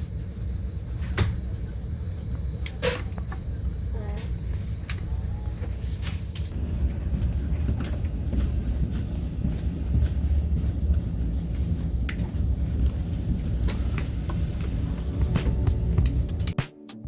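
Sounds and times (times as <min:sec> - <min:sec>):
vehicle interior rumble: 0:06.5 - 0:16.6.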